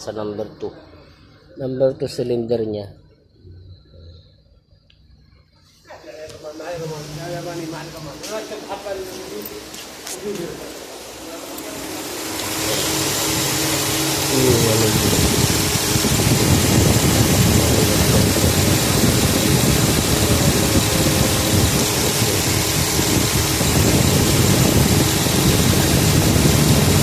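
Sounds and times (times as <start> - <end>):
car engine running: 6.9 - 27.0.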